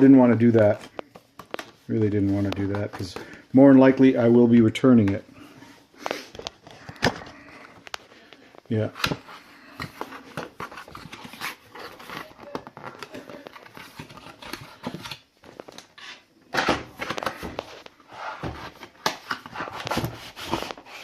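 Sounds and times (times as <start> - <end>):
packaging rustling and scraping: 6.0 - 21.0.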